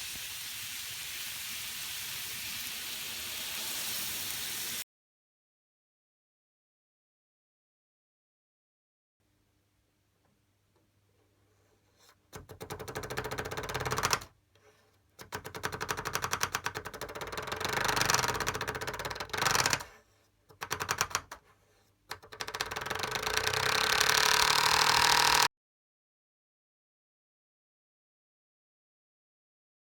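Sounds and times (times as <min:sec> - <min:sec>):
mechanical rattling clatter: 0:22.1 - 0:25.5.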